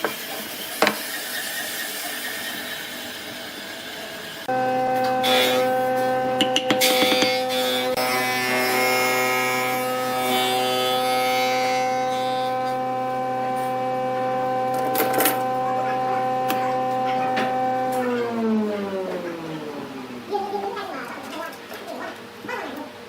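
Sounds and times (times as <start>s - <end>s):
turning tool hissing on wood: 0.0s - 4.4s
wood lathe motor humming: 0.8s - 21.1s.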